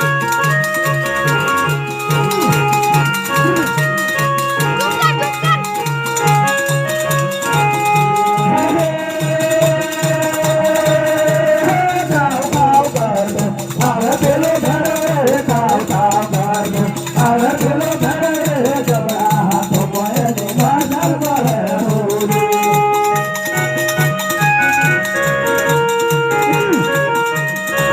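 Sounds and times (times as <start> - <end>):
wavering melody: 0.0 - 9.4, 22.3 - 27.9
held keyboard notes: 0.0 - 27.9
shaker rattling: 0.0 - 27.9
steady drum beat: 0.0 - 27.9.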